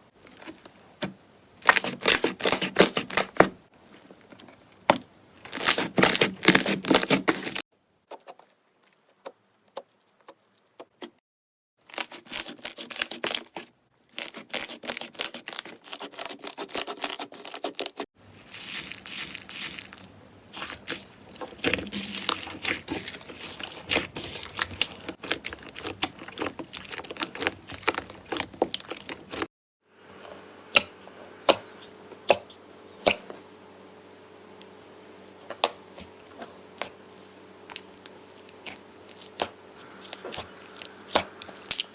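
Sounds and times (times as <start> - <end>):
slime crackling and popping: 5.5 - 7.6, 18.5 - 29.5.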